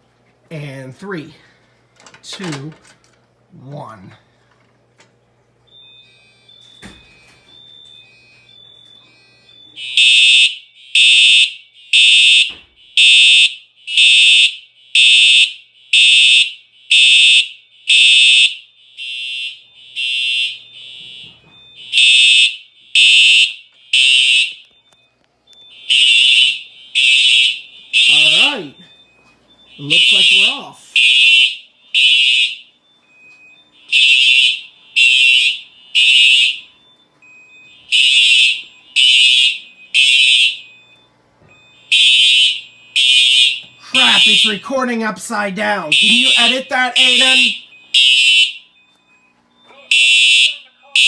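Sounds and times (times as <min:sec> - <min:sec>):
fire alarm horns blasting: 0:05.7 - 0:51.0.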